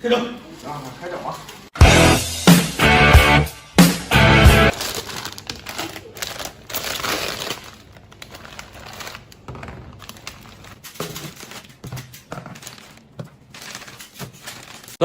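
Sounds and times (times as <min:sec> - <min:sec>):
packaging crinkling and rustling: 0:04.7 - 0:15.0.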